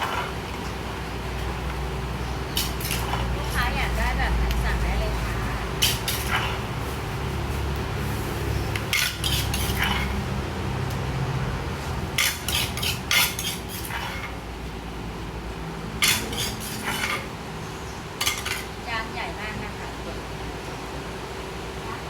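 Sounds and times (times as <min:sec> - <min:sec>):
utensils clinking against bowl: 0:02.5 - 0:03.8, 0:05.8 - 0:06.7, 0:08.6 - 0:10.3, 0:12.1 - 0:14.4, 0:16.0 - 0:17.3, 0:18.2 - 0:18.8.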